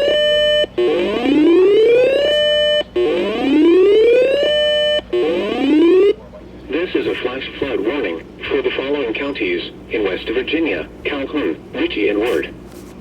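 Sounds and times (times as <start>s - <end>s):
electronic whoop siren: 0.0s - 6.2s.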